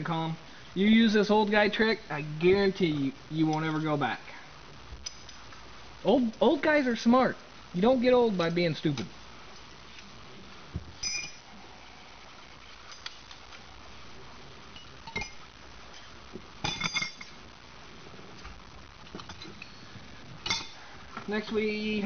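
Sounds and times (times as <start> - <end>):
metal tools clinking: 11.0 - 11.5, 14.8 - 15.4, 16.6 - 17.4.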